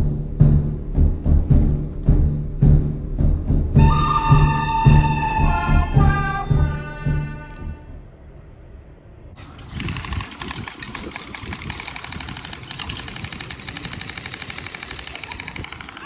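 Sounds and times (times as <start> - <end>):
small motor clattering: 9.4 - 16.0.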